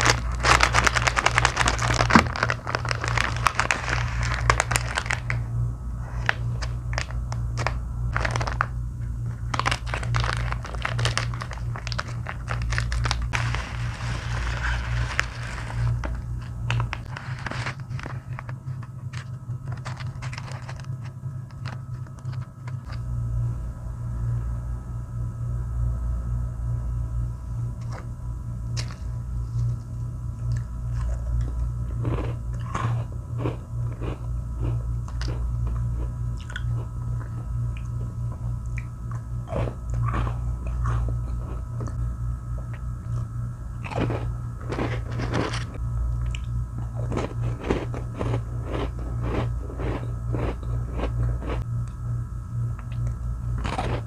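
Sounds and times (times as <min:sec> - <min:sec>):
biscuits crunching while chewed: 0:00.0 - 0:23.1, 0:28.7 - 0:52.0, 0:52.7 - 0:54.0
steady low hum: 0:00.0 - 0:54.0.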